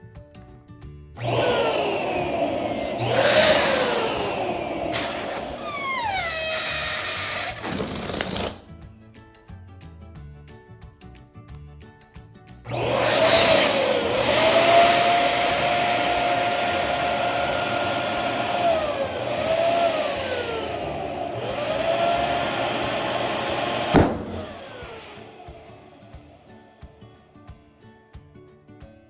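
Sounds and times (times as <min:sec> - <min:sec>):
electric balloon pump rushing: 0:01.2 - 0:08.7, 0:12.7 - 0:26.6
sharp crack: 0:23.9 - 0:24.8.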